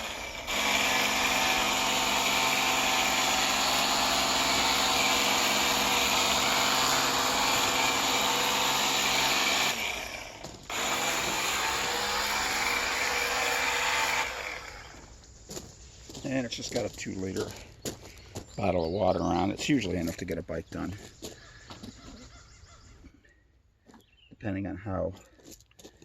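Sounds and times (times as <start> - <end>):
power cleaner motor: 0.0 - 15.0.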